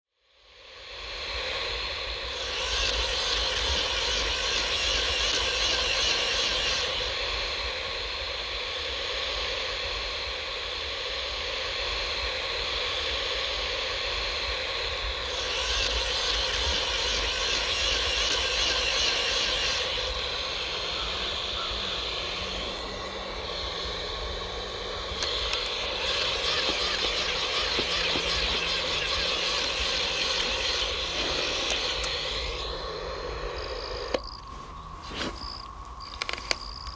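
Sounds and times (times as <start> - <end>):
high hissing buzz: 1.0 - 36.9.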